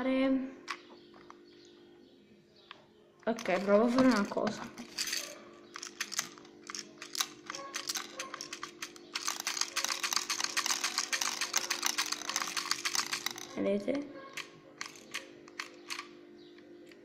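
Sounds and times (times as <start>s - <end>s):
plastic beads clicking: 3.2s - 13.6s, 14.3s - 16.1s.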